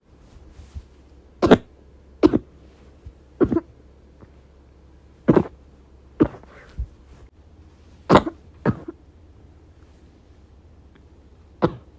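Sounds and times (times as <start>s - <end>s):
person coughing: 3.4s - 3.8s, 8.1s - 9.0s.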